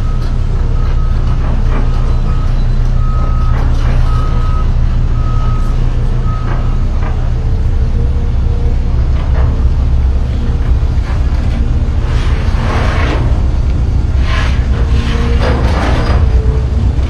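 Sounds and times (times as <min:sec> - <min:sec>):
electronic warning beeps: 0:00.0 - 0:09.2
heavy low rumble: 0:00.0 - 0:17.0.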